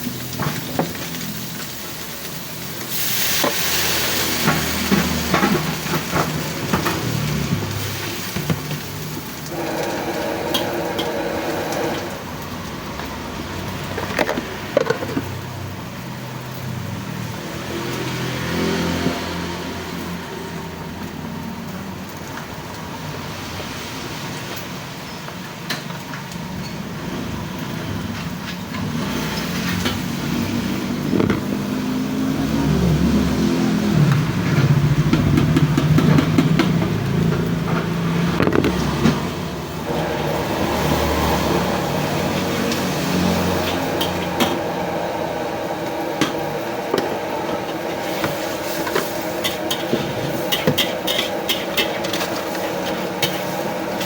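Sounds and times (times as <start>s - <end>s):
vehicle engines passing: 0.0s - 25.6s, 26.2s - 54.0s
engine revving: 16.9s - 20.6s, 28.8s - 51.2s.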